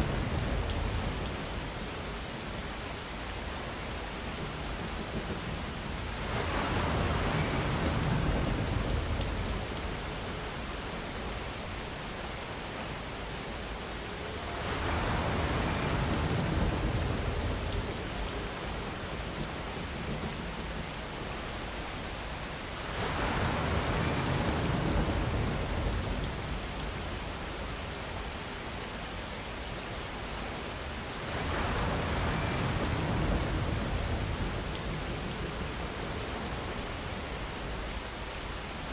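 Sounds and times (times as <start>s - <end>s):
steady rain falling: 0.0s - 38.9s
distant thunder rumbling: 14.4s - 27.4s.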